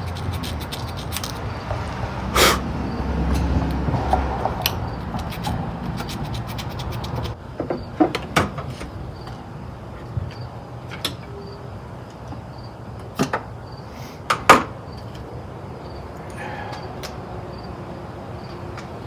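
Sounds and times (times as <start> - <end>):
hand tools clicking and scraping: 0.0 - 1.5, 3.3 - 7.4.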